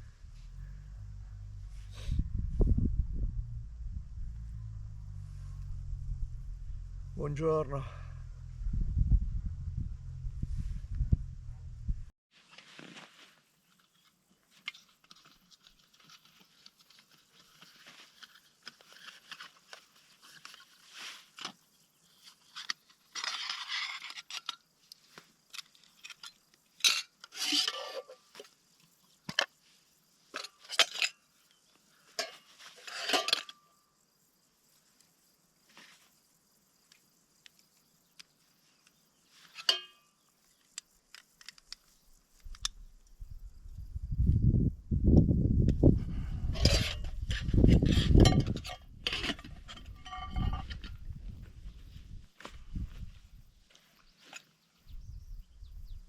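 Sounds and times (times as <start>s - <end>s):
camping gear rustling and clattering: 12.3s - 33.8s, 35.6s - 36.3s, 38.5s - 42.8s, 45.8s - 55.0s.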